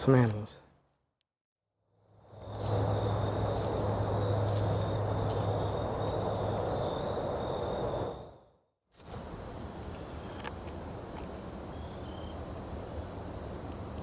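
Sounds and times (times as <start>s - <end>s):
insects calling at night: 2.1s - 8.5s, 9.2s - 13.5s.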